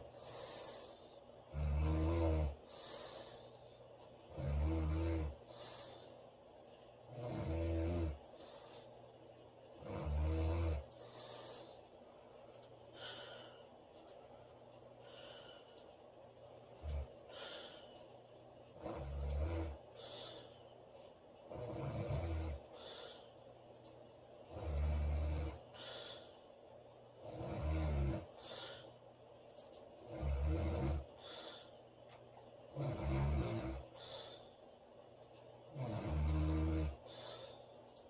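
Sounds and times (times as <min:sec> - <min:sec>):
soft breathing: 0:00.0 - 0:38.0
woman snoring: 0:00.2 - 0:03.5, 0:04.3 - 0:06.1, 0:07.1 - 0:08.9, 0:09.8 - 0:11.7, 0:18.8 - 0:19.8, 0:21.5 - 0:22.6, 0:24.5 - 0:26.2, 0:27.2 - 0:28.8, 0:30.0 - 0:31.4, 0:32.8 - 0:34.1, 0:35.7 - 0:37.5.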